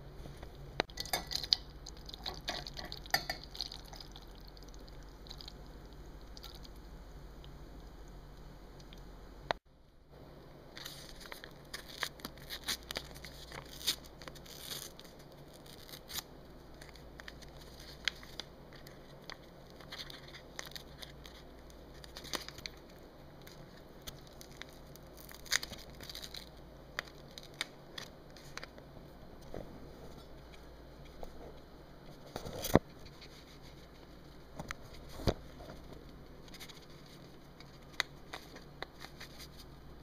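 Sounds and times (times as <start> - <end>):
paper packaging crinkling and tearing: 10.7 - 28.8, 32.1 - 39.7.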